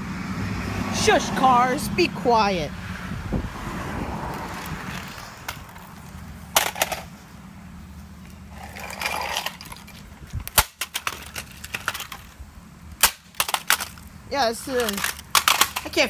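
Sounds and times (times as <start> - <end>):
scraping rustle: 4.2 - 12.4.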